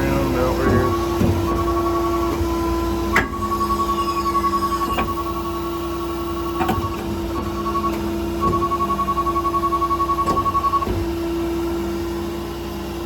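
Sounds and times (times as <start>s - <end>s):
diesel engine low hum: 0.0s - 8.4s
hydraulic system whine: 0.0s - 11.3s.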